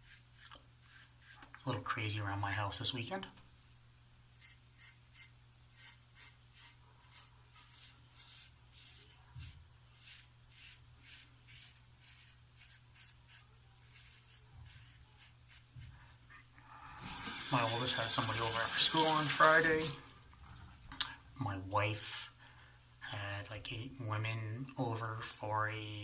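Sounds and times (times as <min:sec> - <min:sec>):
razor scraping stubble: 0:00.0 - 0:01.7, 0:04.4 - 0:16.0.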